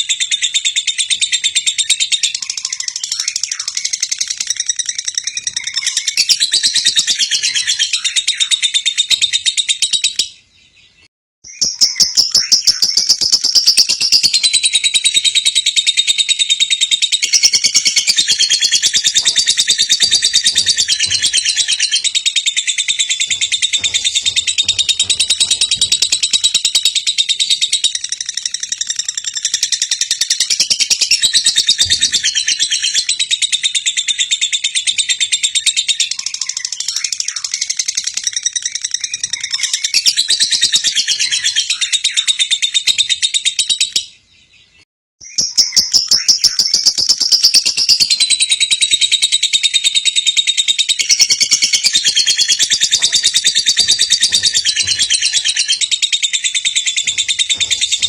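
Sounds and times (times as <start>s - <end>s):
lovebird chattering trill: 11.5s - 34.9s, 45.3s - 58.0s.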